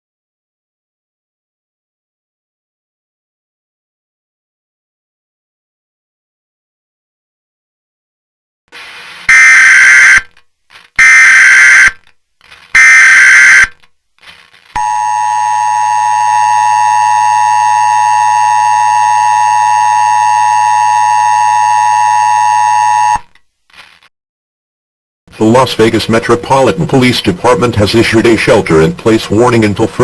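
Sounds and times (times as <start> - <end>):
two-tone attention signal: 14.8 - 23.2.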